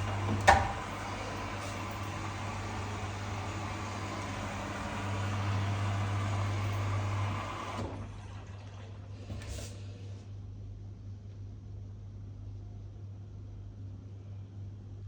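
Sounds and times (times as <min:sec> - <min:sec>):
water rushing into washing machine: 0:00.0 - 0:10.2.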